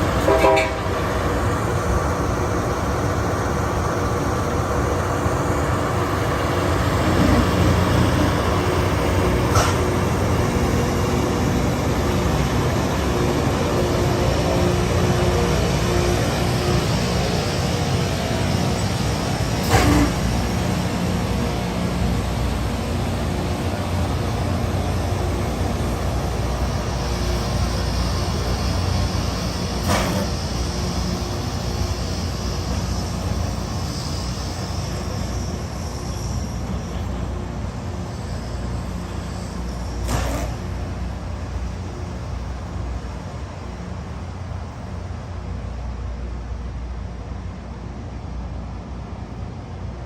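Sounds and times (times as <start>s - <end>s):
diesel engine rumbling: 0.0s - 49.4s.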